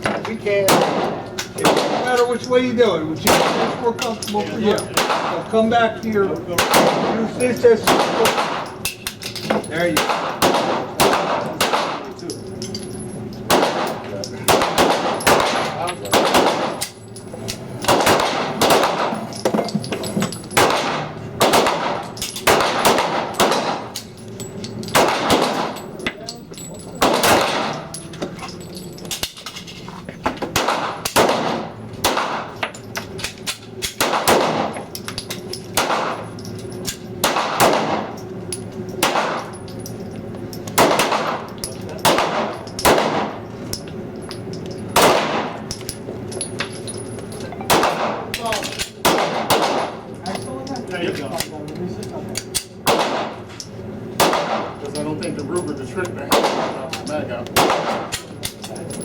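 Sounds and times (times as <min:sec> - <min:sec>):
pistol gunshots: 0:00.0 - 0:02.2, 0:03.2 - 0:04.0, 0:04.9 - 0:05.5, 0:06.6 - 0:09.2, 0:09.9 - 0:12.2, 0:13.5 - 0:17.0, 0:17.8 - 0:19.3, 0:20.5 - 0:24.0, 0:24.9 - 0:25.8, 0:27.0 - 0:27.9, 0:30.5 - 0:32.6, 0:33.2 - 0:34.9, 0:35.8 - 0:38.2, 0:39.0 - 0:39.6, 0:40.8 - 0:43.4, 0:45.0 - 0:45.7, 0:47.7 - 0:50.1, 0:52.5 - 0:53.4, 0:54.2 - 0:54.8, 0:56.3 - 0:58.6.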